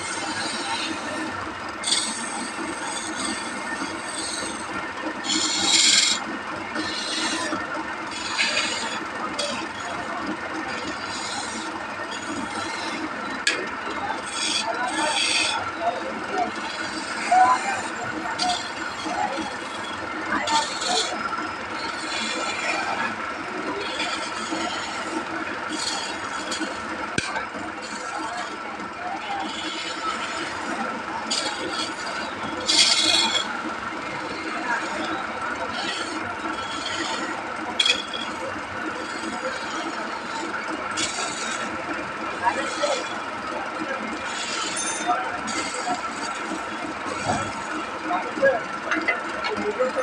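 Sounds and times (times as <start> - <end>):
woodworking machine running: 0.0 - 50.0
rasping bursts of wood: 29.4 - 43.1.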